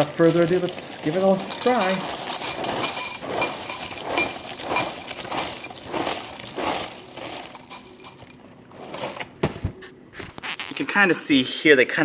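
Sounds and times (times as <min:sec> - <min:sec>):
cereal pouring into a bowl: 0:00.0 - 0:09.1.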